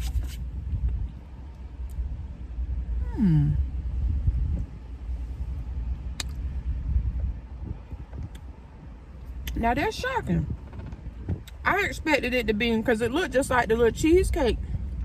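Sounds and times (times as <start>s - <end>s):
car engine idling: 0.0s - 15.0s
falling vocal hum: 3.0s - 3.9s.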